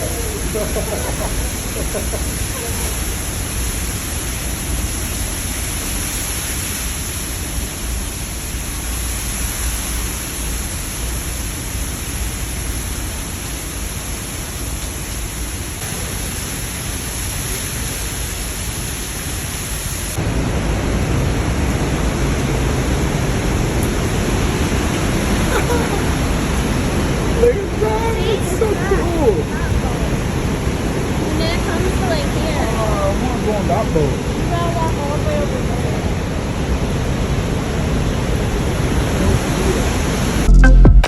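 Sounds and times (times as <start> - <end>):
waterfall roaring: 0.0 - 41.0.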